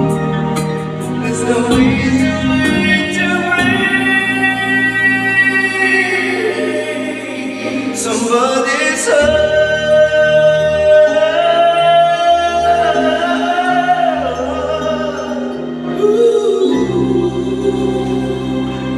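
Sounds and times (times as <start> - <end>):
backing track music: 0.0 - 18.9.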